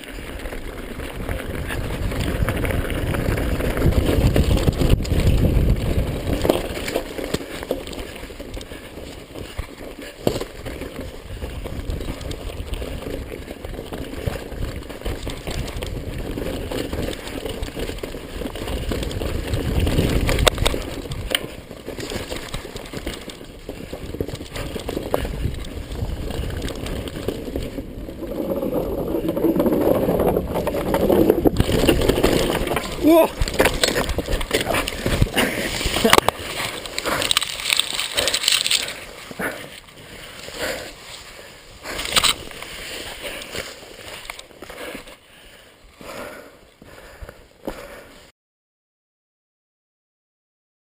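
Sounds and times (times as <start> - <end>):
bike knocking and rattling: 0.0 - 48.0
bike tyres rolling over rough ground: 0.0 - 48.3
wind rushing over microphone: 0.5 - 6.7, 14.2 - 21.4, 23.7 - 36.4.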